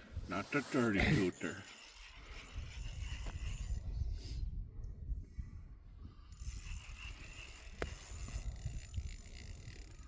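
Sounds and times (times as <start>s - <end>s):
fishing reel ticking: 1.5s - 3.8s, 6.3s - 10.0s.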